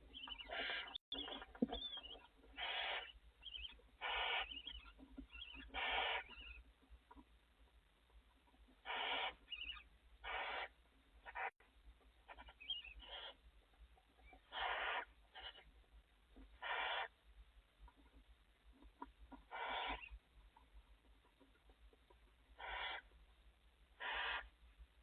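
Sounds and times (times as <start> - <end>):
faint high chirp: 0.1 - 6.6, 8.8 - 10.7, 12.3 - 13.4
owls hissing snoring calls: 0.5 - 1.0, 2.6 - 3.2, 4.0 - 4.6, 5.7 - 6.3, 8.8 - 9.4, 10.2 - 11.5, 12.3 - 13.4, 14.5 - 15.6, 16.6 - 17.1, 19.5 - 20.1, 22.6 - 23.1, 24.0 - 24.5.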